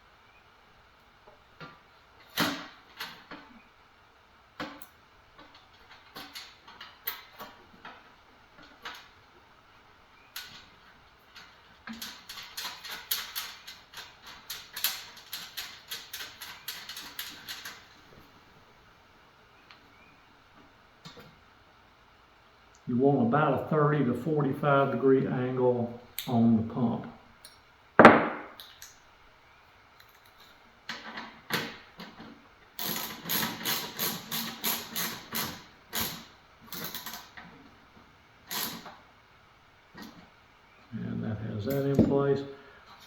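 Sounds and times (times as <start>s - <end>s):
metal parts clicking and knocking: 10.4s - 18.0s, 30.0s - 37.3s.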